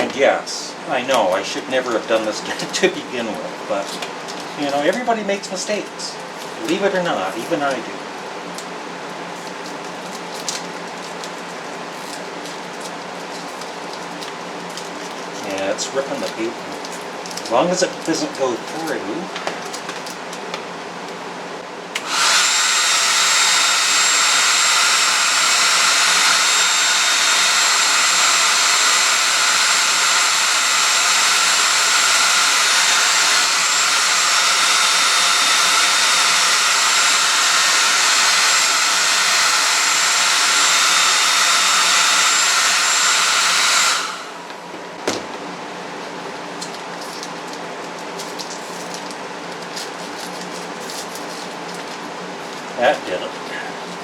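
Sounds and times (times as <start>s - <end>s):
hair dryer blowing with high whine: 21.9s - 45.4s, 52.8s - 54.0s.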